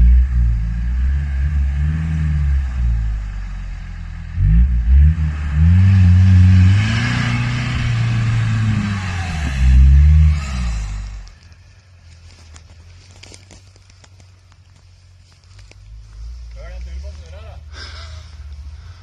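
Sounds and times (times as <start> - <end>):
off-road vehicle engine revving: 0.0 - 11.6, 15.5 - 19.0.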